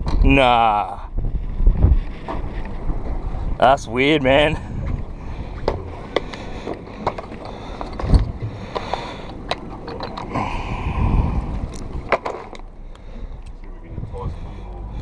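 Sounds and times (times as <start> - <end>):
wind and water rumble against hull: 0.0 - 15.0
fishing tackle clicking and knocking: 5.7 - 10.4.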